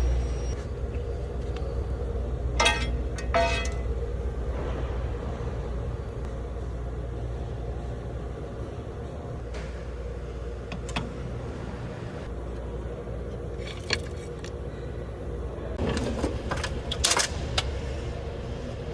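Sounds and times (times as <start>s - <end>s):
low mechanical hum: 0.0s - 18.9s
clinks and rattles: 2.6s - 4.1s, 13.6s - 14.6s.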